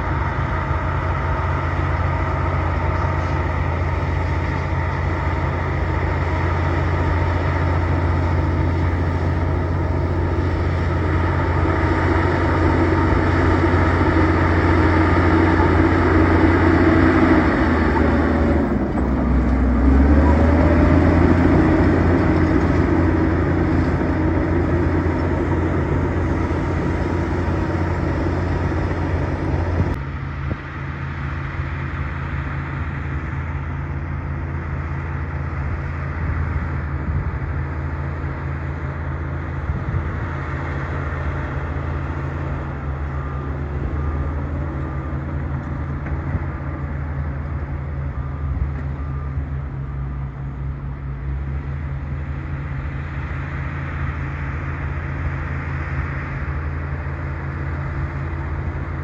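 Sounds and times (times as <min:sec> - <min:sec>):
bulldozer diesel engine running: 0:00.0 - 0:59.0.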